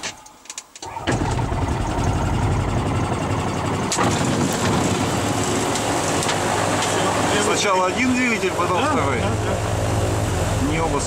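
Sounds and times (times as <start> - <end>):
engine starter cranking: 0.8 - 5.0.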